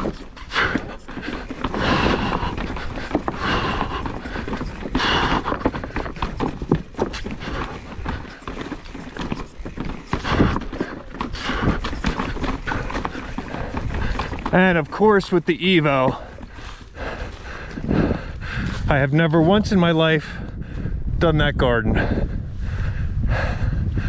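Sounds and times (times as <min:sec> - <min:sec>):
mountain bike rattling over rocks: 0:00.0 - 0:18.3.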